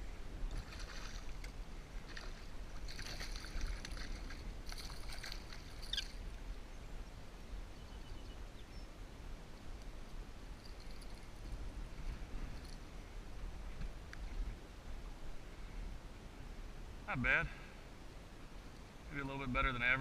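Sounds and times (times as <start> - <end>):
fish splashing in shallow water: 0.5 - 6.4.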